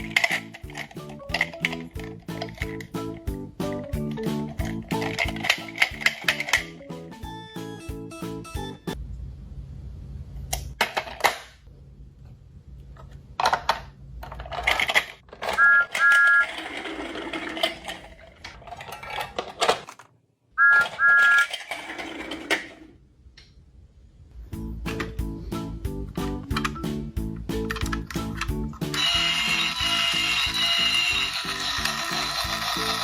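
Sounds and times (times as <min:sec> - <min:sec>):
toy mechanism clattering and clicking: 0:00.0 - 0:03.0, 0:04.2 - 0:06.8, 0:13.4 - 0:20.1, 0:20.7 - 0:22.9, 0:27.7 - 0:33.0.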